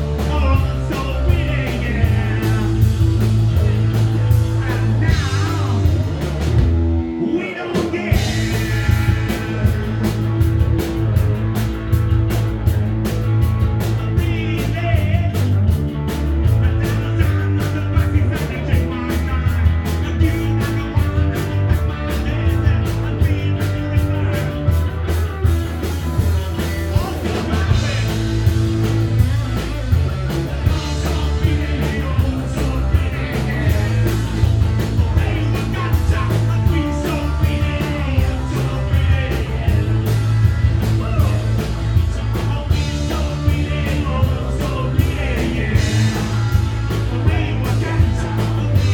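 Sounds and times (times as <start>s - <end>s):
person singing: 0.0s - 6.1s, 7.2s - 10.0s, 30.6s - 34.3s, 35.0s - 48.9s
punk rock band playing live: 0.0s - 48.9s.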